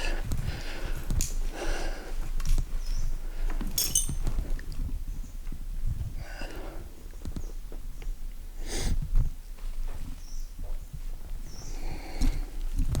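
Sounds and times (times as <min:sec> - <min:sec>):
light clinks and knocks: 0:03.6 - 0:04.4.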